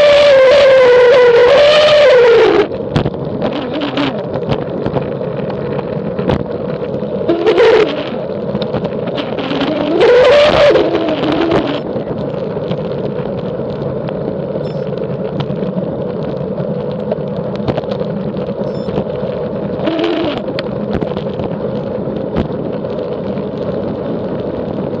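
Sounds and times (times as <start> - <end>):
bicycle tyre noise: 0.0 - 25.0
rushing wind: 0.0 - 25.0
droning tone swooping up and down: 14.6 - 15.0.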